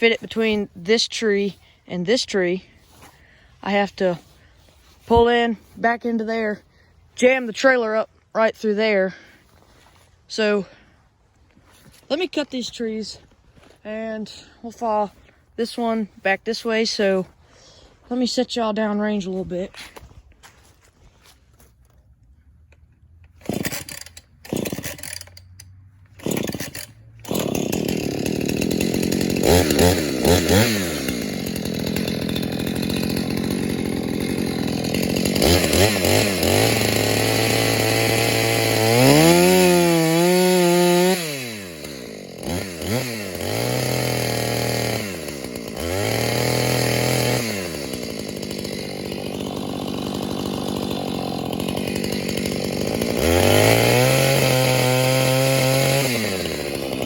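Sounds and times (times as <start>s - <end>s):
chainsaw engine revving: 0.0s - 9.5s, 23.3s - 57.0s
chainsaw starter pull: 22.7s - 57.0s.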